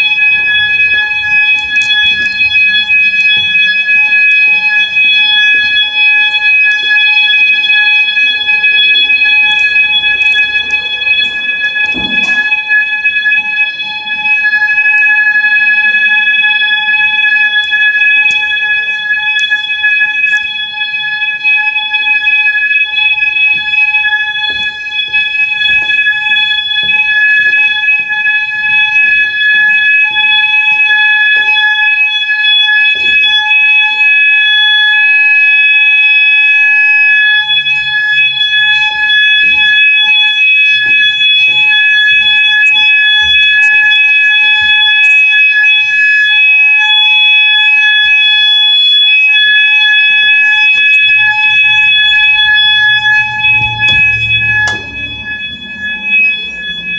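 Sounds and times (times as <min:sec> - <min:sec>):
fire alarm steady high tone: 0:00.0 - 0:56.9
low knocks: 0:52.9 - 0:56.0.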